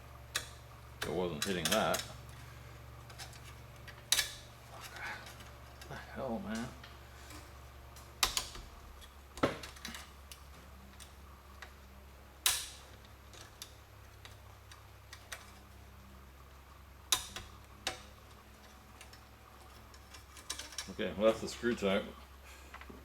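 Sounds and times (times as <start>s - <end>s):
screwdriver clicking on metal trim: 0.3s - 2.2s, 3.1s - 5.9s, 17.1s - 20.9s.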